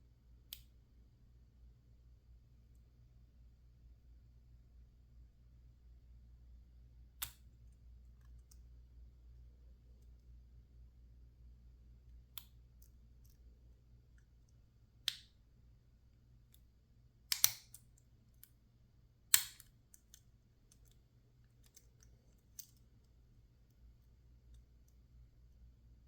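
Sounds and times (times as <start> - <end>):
lockpick metallic clicks: 17.3 - 18.6, 19.3 - 23.2.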